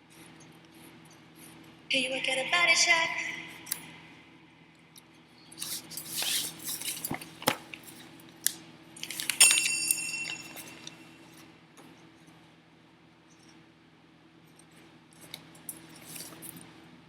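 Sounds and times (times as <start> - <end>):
metal objects rustling: 9.0 - 11.2
loud ringing metallic clink: 9.4 - 11.2.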